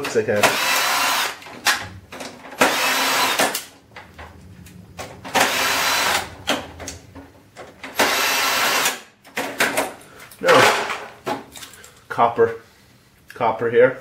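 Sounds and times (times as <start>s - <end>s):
electric drill-driver running: 0.5s - 1.4s, 2.6s - 3.6s, 5.3s - 6.3s, 8.0s - 9.0s.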